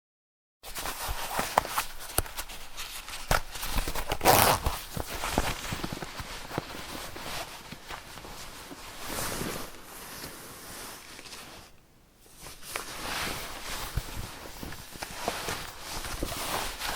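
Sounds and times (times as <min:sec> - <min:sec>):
zipper clicks and rattles: 0:03.1 - 0:08.0
zipper zipping rasp: 0:03.9 - 0:04.9.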